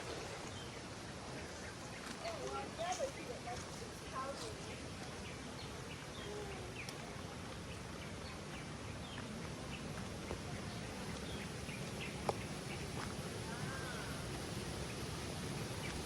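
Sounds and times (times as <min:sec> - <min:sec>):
steady background hiss: 0:00.0 - 0:16.0
birds chirping: 0:07.7 - 0:16.0.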